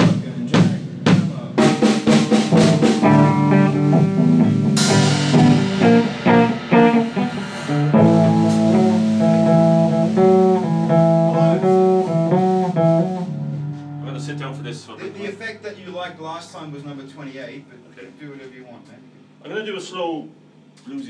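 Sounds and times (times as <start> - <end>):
blues guitar playing: 1.6 - 17.0.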